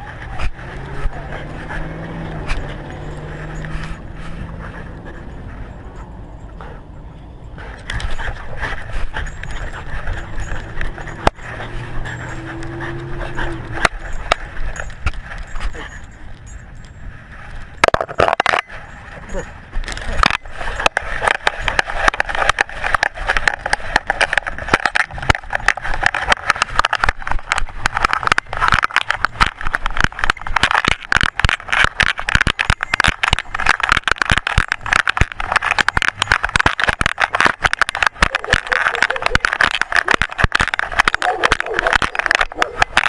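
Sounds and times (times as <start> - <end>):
camera housing clicking and rattling: 17.8 - 18.8, 19.8 - 43.0.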